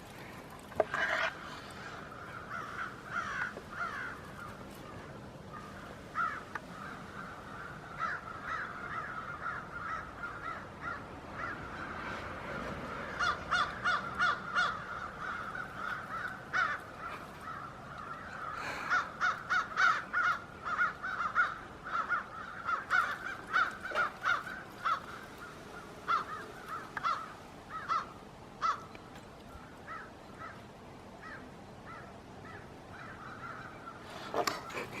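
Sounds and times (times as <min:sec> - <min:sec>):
crows cawing: 0:00.1 - 0:12.2, 0:12.9 - 0:35.0.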